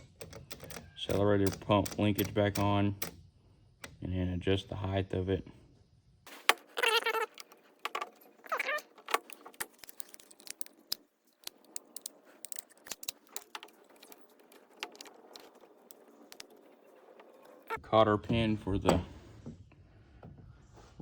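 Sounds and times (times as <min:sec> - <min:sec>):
small metal parts clicking: 0:06.4 - 0:17.8.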